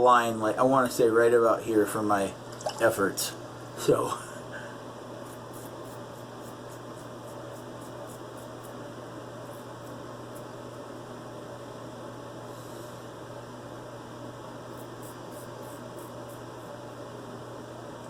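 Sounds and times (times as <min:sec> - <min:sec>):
steady low hum: 0:00.0 - 0:18.0
razor scraping through stubble: 0:05.2 - 0:08.8.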